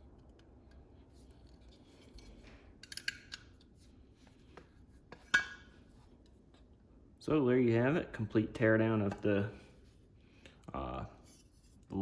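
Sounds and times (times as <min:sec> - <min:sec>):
small lock parts clicking and rattling: 0:00.1 - 0:03.6.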